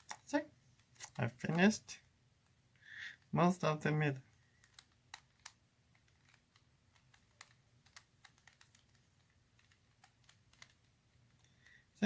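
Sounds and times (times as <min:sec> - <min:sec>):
puzzle cube plastic clicks: 0:00.0 - 0:01.7, 0:04.3 - 0:11.9.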